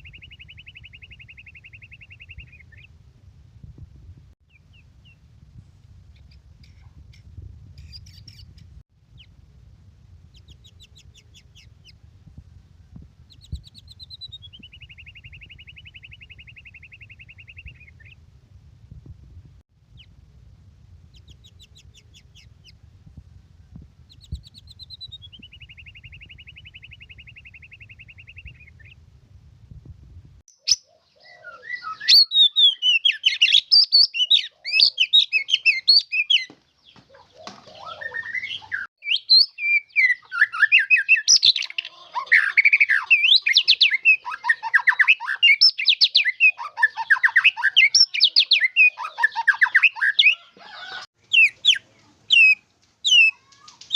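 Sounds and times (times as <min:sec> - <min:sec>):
bird singing whistles and trills: 0:00.0 - 0:02.9, 0:13.3 - 0:18.2, 0:24.1 - 0:29.0, 0:30.6 - 0:36.5, 0:37.4 - 0:50.5.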